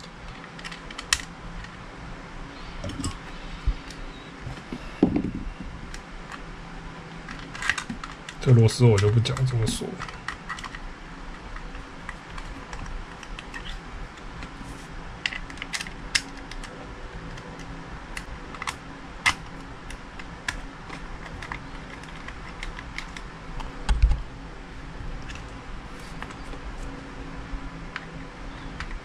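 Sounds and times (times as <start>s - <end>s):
small clicks of plastic parts: 0.2s - 1.8s, 7.2s - 10.8s, 15.2s - 24.1s.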